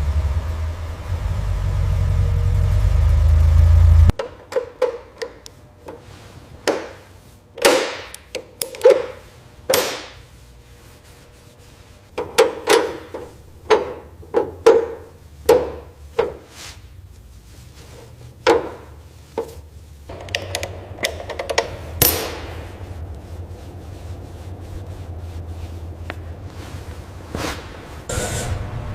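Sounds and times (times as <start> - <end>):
hand tools knocking and tapping: 4.2 - 5.4, 12.2 - 16.4.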